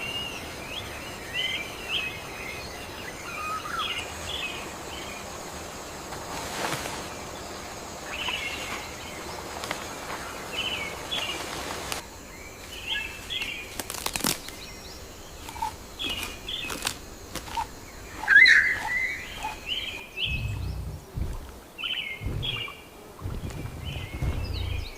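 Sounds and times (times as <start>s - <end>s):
steady background hiss: 0.0s - 24.9s
birds chirping: 7.1s - 24.9s.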